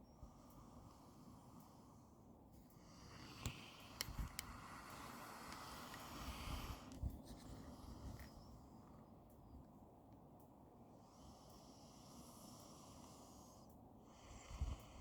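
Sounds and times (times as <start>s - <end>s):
small clicks: 3.3s - 6.3s.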